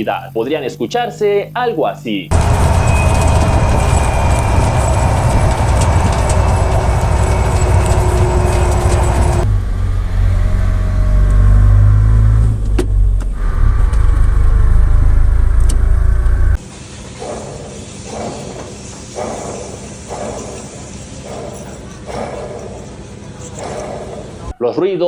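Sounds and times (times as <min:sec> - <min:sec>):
faint whine: 0:00.0 - 0:10.0
car driving with low rumble: 0:02.3 - 0:16.6.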